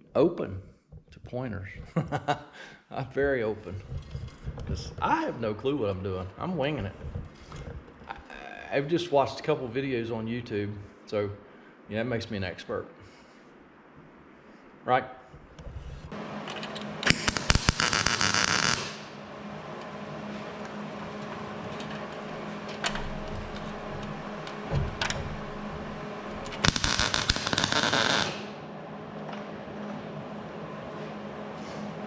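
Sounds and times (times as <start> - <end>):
steady low hum: 0.0 - 32.0
welder popping: 17.0 - 19.2, 26.4 - 28.5.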